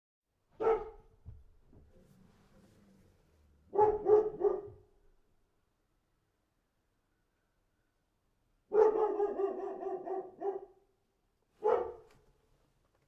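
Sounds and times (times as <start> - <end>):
dog barking: 0.6 - 1.2, 3.7 - 4.9, 8.7 - 10.9, 11.6 - 12.1.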